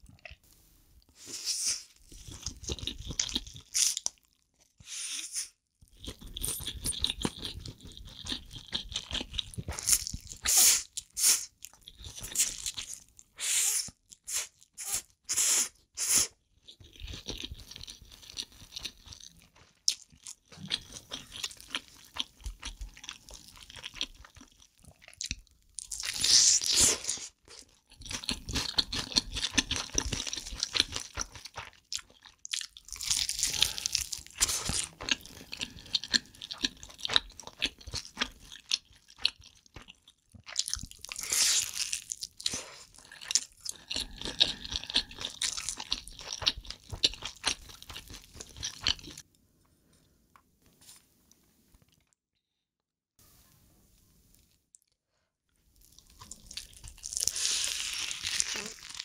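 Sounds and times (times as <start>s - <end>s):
crunchy chewing: 2.0s - 4.4s, 16.6s - 49.2s.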